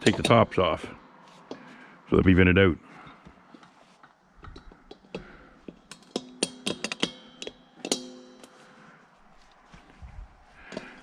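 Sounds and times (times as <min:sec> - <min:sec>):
metal clanking: 0:00.0 - 0:00.6, 0:04.4 - 0:08.9.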